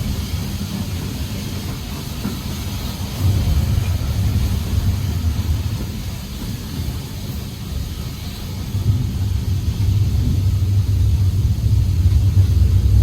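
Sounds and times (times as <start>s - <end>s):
hiss: 0.0s - 13.0s
train rumbling on track: 0.0s - 13.0s.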